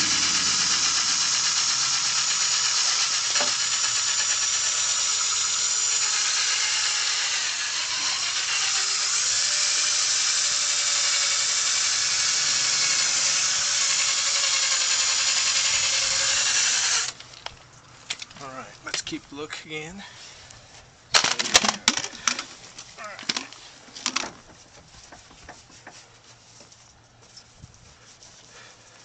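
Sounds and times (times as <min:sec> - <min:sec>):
power drill whining: 0:00.0 - 0:17.2.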